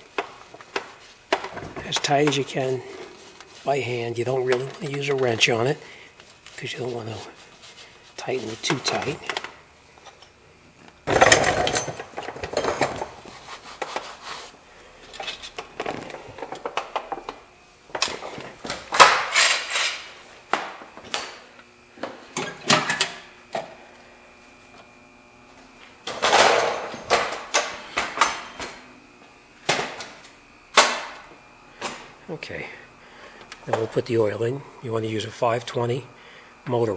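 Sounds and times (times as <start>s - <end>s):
tools and metal parts clanking: 11.0s - 13.2s, 15.1s - 18.4s, 19.0s - 20.1s, 22.4s - 23.2s, 26.0s - 28.7s.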